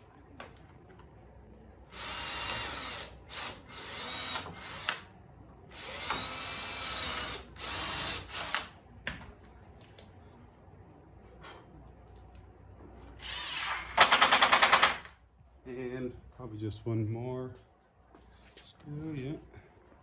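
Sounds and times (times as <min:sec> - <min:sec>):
cordless drill drilling into wood: 0:01.9 - 0:05.1, 0:05.7 - 0:08.7.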